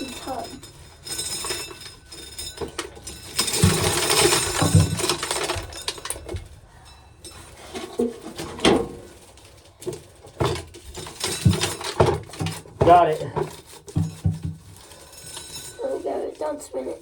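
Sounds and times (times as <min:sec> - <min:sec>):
kernels falling: 0:00.0 - 0:06.6, 0:07.2 - 0:16.2
corn sheller rattling: 0:00.0 - 0:17.0.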